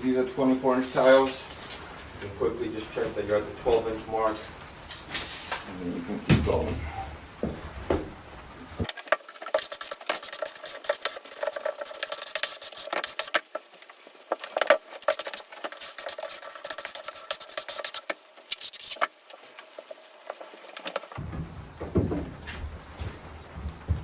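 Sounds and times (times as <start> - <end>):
steel trowel scraping mortar: 8.9 - 13.4, 14.4 - 19.1.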